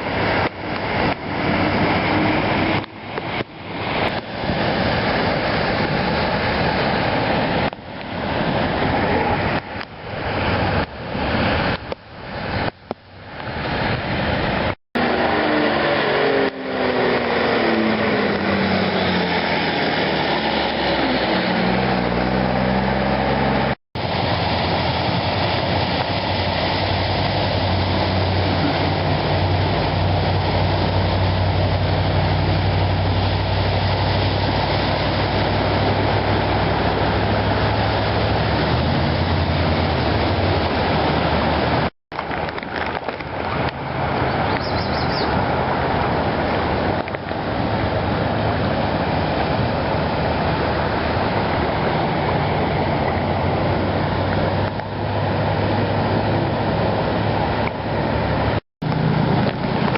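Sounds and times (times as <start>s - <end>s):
constant rushing noise: 0.0s - 59.9s
low engine hum: 0.0s - 59.9s
vehicle passing: 13.6s - 41.9s.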